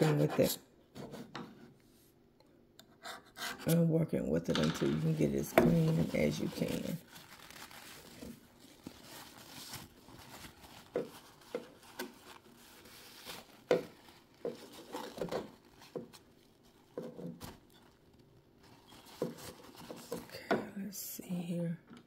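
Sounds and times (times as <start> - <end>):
paper towel crinkling: 4.9 - 20.4.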